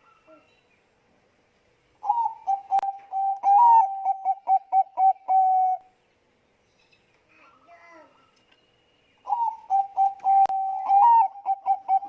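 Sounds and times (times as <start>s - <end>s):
dove cooing: 2.0s - 5.9s, 9.3s - 12.0s.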